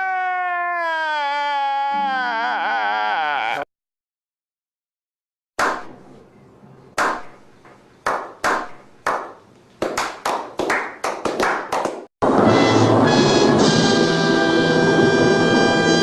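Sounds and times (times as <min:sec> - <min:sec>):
echoing hand claps: 0:08.0 - 0:12.1.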